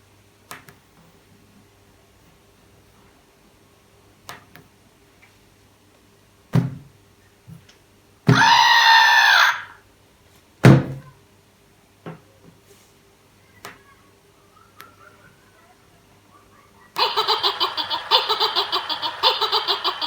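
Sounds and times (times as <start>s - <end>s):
cartoonish voice from toy speaker: 8.3s - 9.7s, 16.5s - 20.0s.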